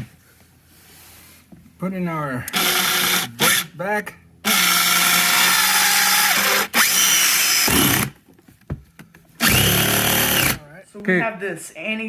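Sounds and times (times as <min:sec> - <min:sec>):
power drill driving a bolt: 0:02.5 - 0:03.7, 0:04.5 - 0:08.2, 0:09.4 - 0:10.6.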